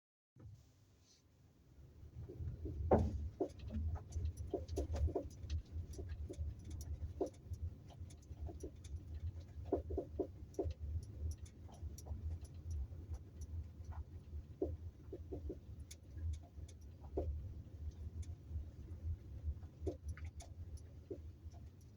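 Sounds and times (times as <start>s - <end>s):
suspension knocking: 2.6s - 6.4s.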